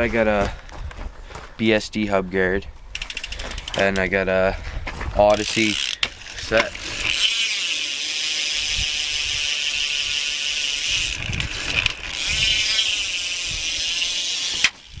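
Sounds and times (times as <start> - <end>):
bicycle hub ratcheting buzz: 2.9 - 4.1, 5.3 - 15.0.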